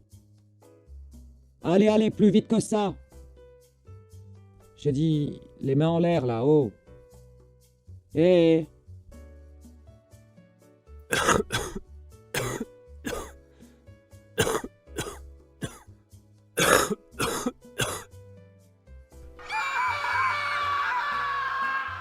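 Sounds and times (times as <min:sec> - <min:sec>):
background music: 0:00.0 - 0:22.0
person coughing hard: 0:11.1 - 0:11.8, 0:12.4 - 0:13.4, 0:14.4 - 0:15.9, 0:16.6 - 0:18.1
high sustained cry: 0:19.4 - 0:22.0.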